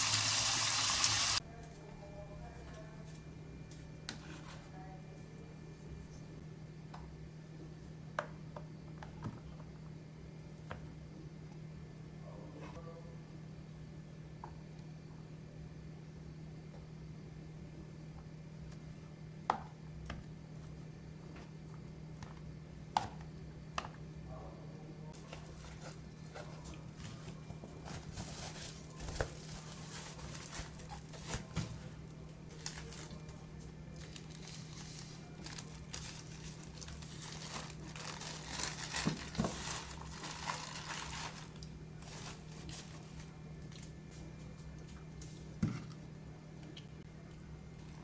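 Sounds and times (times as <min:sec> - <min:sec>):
steady low hum: 0:01.4 - 0:48.0
packaging crinkling and rustling: 0:25.2 - 0:31.9, 0:32.5 - 0:43.9.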